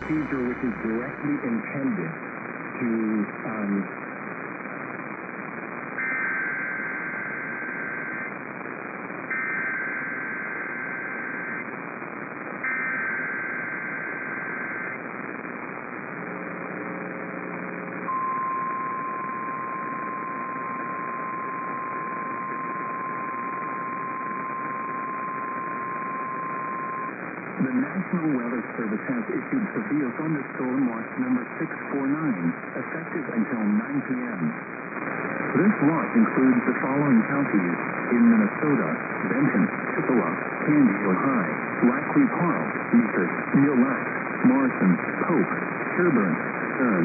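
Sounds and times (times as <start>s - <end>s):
static hiss: 0.0s - 47.0s.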